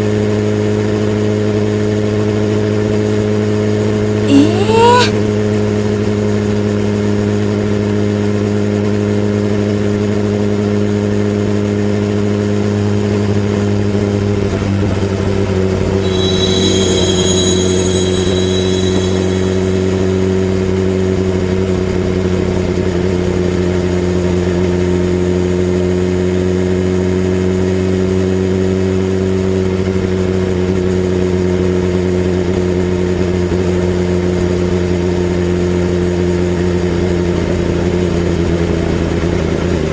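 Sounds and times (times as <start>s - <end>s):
high-pitched whine: 16.0s - 20.5s.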